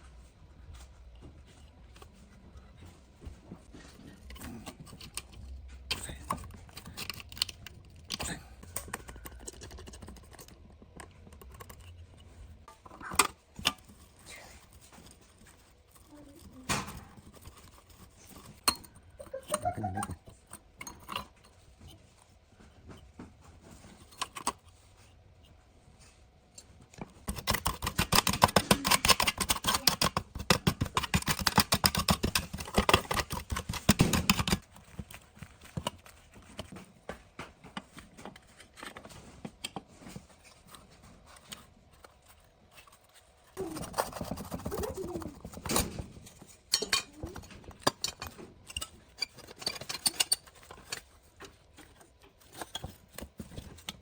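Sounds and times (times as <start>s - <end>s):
hand tool scraping and clicking: 3.9s - 22.0s, 23.9s - 24.8s, 27.0s - 36.8s, 37.7s - 54.0s.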